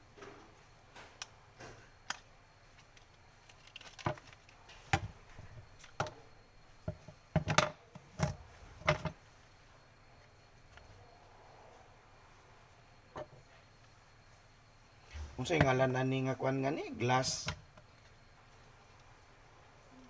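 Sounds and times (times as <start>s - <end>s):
hard parts knocking and clattering: 6.9s - 9.2s.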